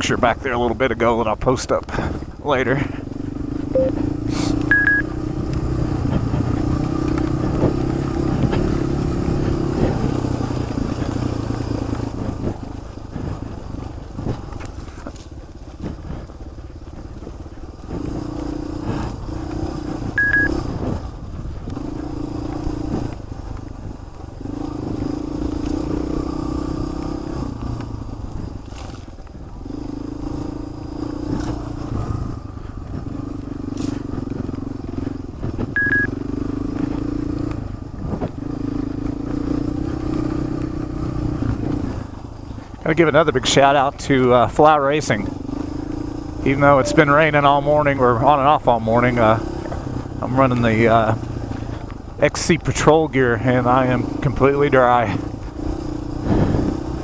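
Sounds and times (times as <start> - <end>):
motorcycle engine revving: 0.0 - 57.0
short high beep: 3.8 - 4.1, 4.7 - 5.1, 20.2 - 20.6, 35.8 - 36.1, 46.7 - 47.4.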